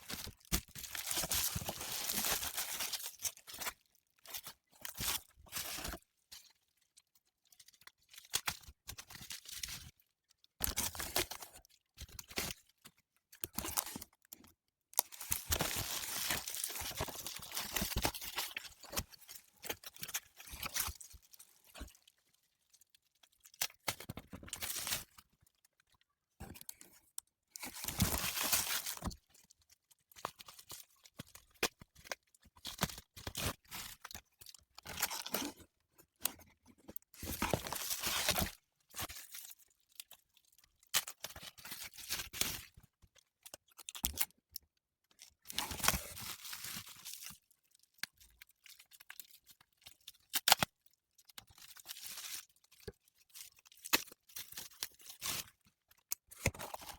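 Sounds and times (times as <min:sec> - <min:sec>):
packaging tearing and crinkling: 0:00.1 - 0:03.7, 0:15.0 - 0:21.0, 0:27.7 - 0:29.2.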